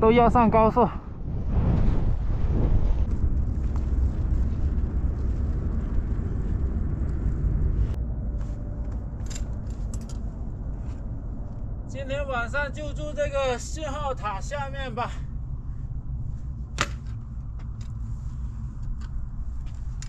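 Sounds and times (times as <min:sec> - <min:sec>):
wind buffeting microphone: 0:00.0 - 0:09.6.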